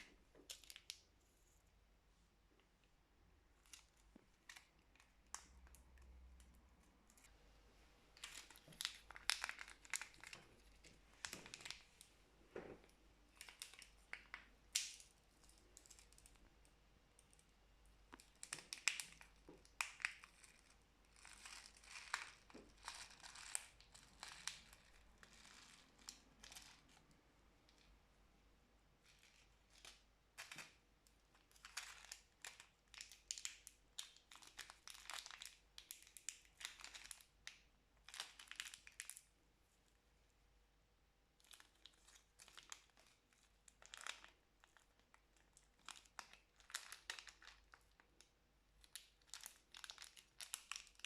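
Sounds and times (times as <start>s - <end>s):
plastic packaging crinkling and tearing: 8.2s - 12.1s, 18.1s - 27.0s, 31.5s - 37.3s, 38.0s - 39.3s, 41.4s - 48.0s, 48.8s - 51.0s.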